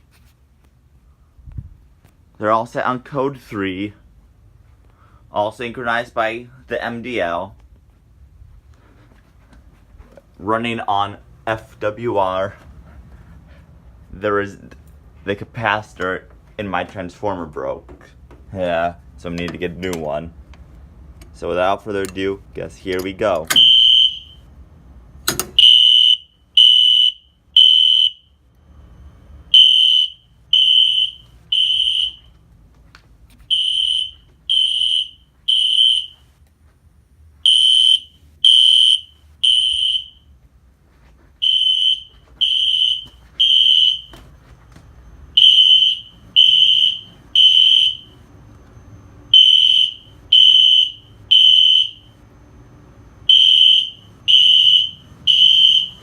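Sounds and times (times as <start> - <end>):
fire alarm horns beeping: 23.5 - 24.6, 25.5 - 32.4, 33.5 - 36.3, 37.4 - 40.4, 41.4 - 56.0.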